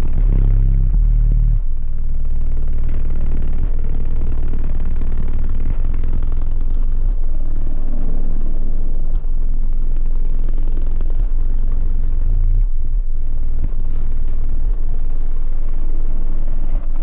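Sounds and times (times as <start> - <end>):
sub-bass rap beat: 0.0 - 7.1
buzzing rattle: 0.0 - 17.0.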